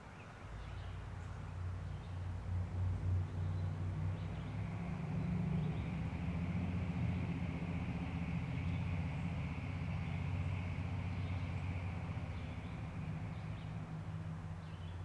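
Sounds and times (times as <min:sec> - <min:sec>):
running creek water: 0:03.7 - 0:14.6.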